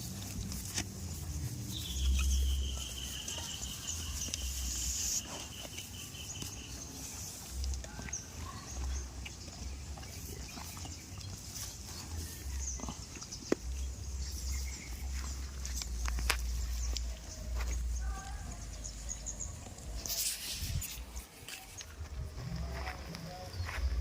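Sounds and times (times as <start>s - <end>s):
low rumbling: 21.9s - 24.0s.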